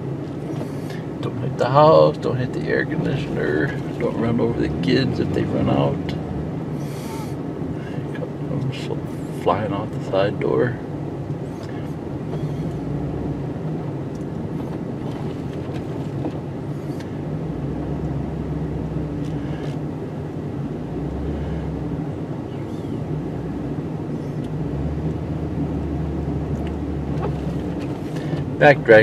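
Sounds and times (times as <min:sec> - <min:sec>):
truck engine running: 0:00.0 - 0:29.0.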